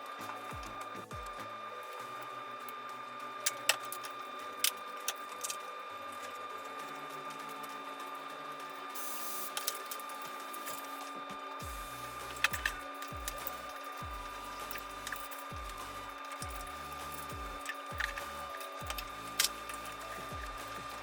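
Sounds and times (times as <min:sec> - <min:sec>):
music with low bass line: 0:00.2 - 0:03.4, 0:11.3 - 0:21.0.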